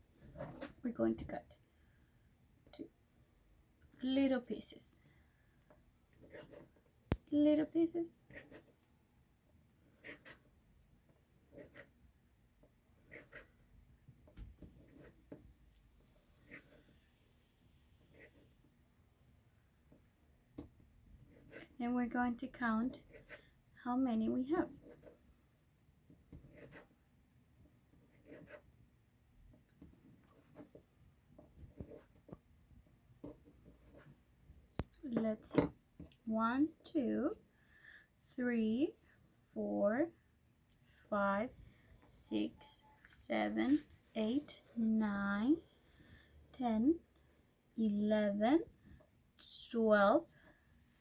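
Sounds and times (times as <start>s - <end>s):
clay tapping and scraping on table: 33.2s - 34.1s.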